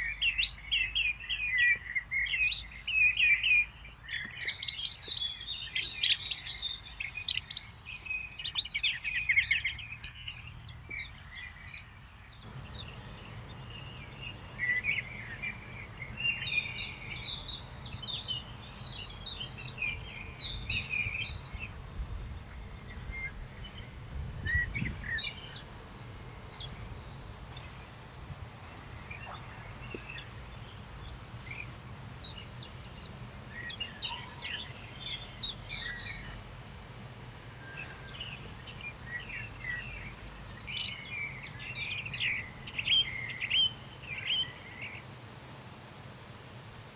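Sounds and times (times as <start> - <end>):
birds chirping and trilling: 10.9 - 36.5, 37.3 - 45.0
low steady rumble: 12.5 - 42.0.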